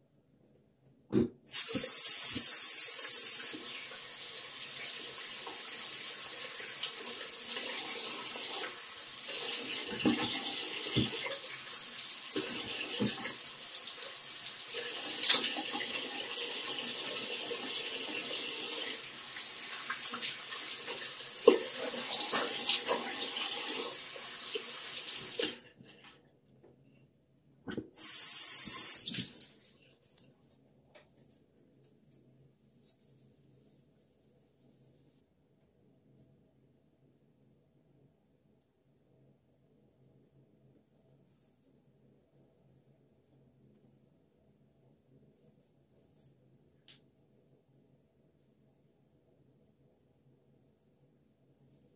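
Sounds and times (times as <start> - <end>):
tap running into sink: 9.8 - 11.4, 12.3 - 13.4.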